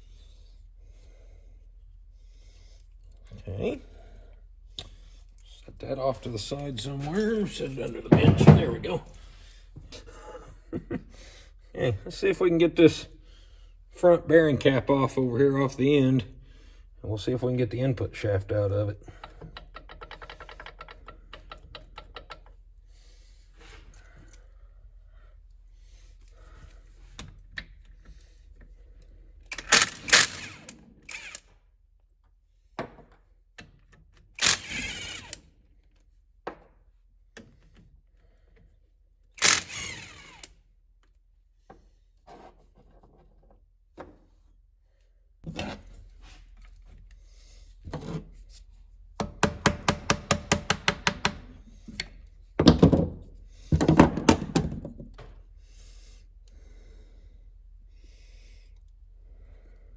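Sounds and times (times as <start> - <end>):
metal tools clanking: 6.5 - 9.3
impact driver hammering: 49.2 - 51.5.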